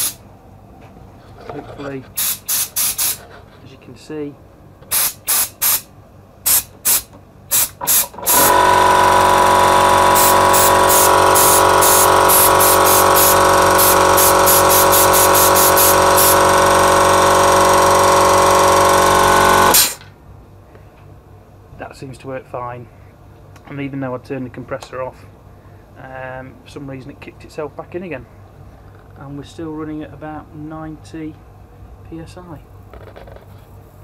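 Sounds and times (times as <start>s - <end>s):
compressed air blasts: 0.0s - 0.2s, 2.2s - 3.2s, 4.9s - 20.0s.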